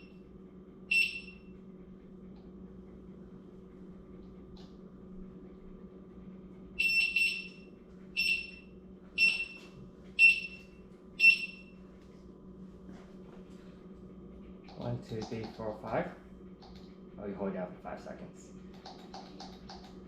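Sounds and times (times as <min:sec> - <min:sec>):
high-pitched buzzer beeps: 0:00.9 - 0:01.4, 0:06.8 - 0:07.6, 0:08.2 - 0:08.6, 0:09.2 - 0:09.6, 0:10.2 - 0:10.6, 0:11.2 - 0:11.7.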